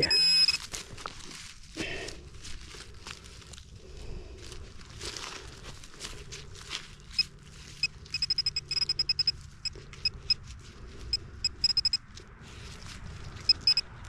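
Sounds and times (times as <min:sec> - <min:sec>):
metal detector probe chirping: 0:00.0 - 0:00.6, 0:07.1 - 0:10.4, 0:11.4 - 0:12.0, 0:13.5 - 0:13.9
soil rustling: 0:00.0 - 0:14.0.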